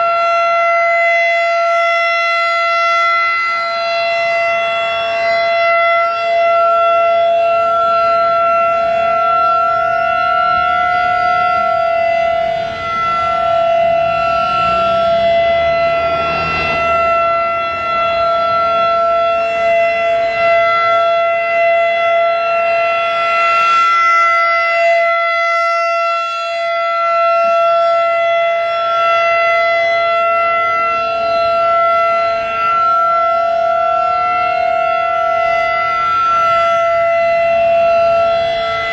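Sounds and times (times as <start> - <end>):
warning siren steady tone: 0.0 - 38.9.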